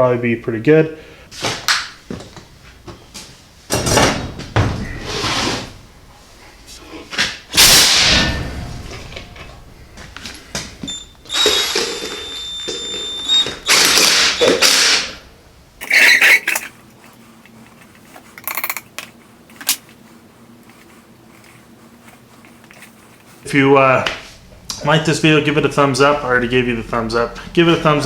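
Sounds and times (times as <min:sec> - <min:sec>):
impact wrench whine: 0:10.2 - 0:15.2, 0:15.8 - 0:16.7.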